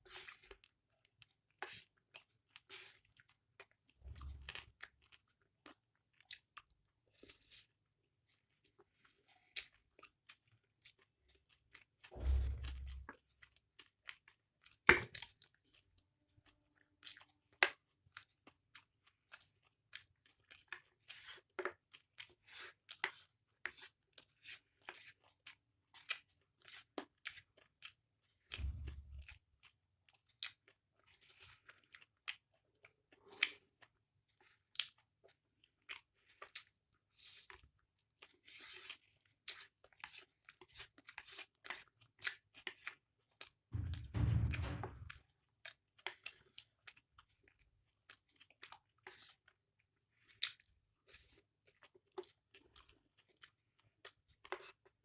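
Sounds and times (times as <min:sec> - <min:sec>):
close-miked noodle chewing: 0:00.0 - 0:12.2, 0:12.8 - 0:43.7, 0:45.5 - 0:55.0
low thump: 0:12.2 - 0:13.1, 0:43.8 - 0:45.2.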